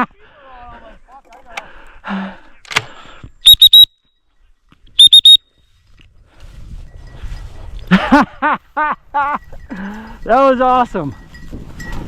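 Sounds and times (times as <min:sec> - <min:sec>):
dog whistle blasts: 0:03.4 - 0:04.0, 0:05.0 - 0:05.4.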